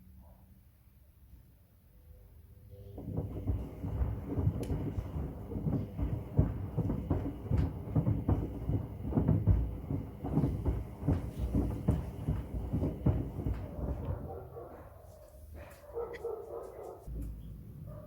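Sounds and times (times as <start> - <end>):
wood thudding in washing machine drum: 3.0 - 14.3.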